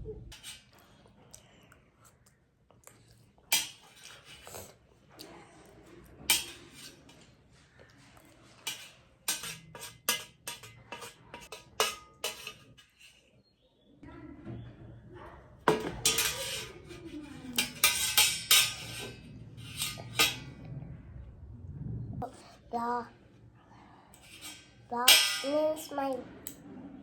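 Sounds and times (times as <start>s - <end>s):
cutlery clinking against a bowl: 0.3s - 0.8s, 3.5s - 4.8s, 6.2s - 7.3s, 8.6s - 13.3s, 15.7s - 20.6s, 24.2s - 25.8s.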